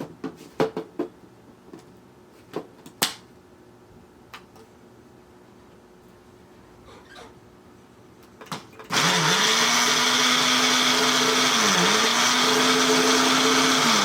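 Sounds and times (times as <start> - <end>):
blender motor running: 8.9 - 14.0.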